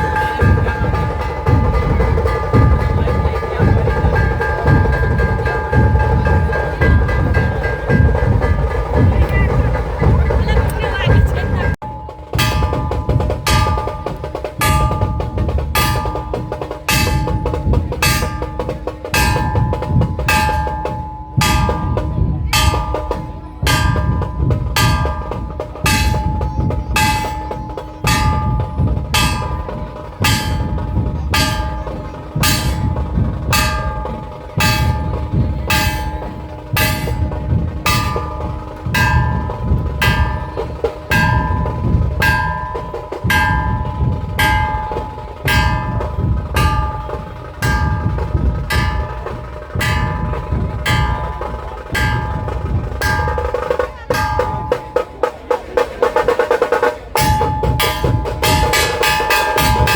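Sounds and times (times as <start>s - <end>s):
dhol drums beating: 0.0s - 59.9s
ringing metallic crash: 11.0s - 55.3s, 57.1s - 59.9s.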